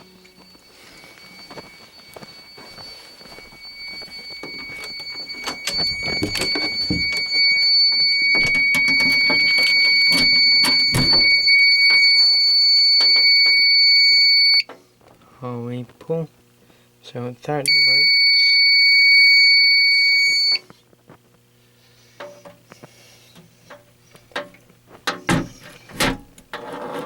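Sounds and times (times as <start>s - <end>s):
high-pitched fire alarm tone: 0.0s - 14.7s, 17.7s - 20.7s
knocks and clatters: 4.4s - 12.1s.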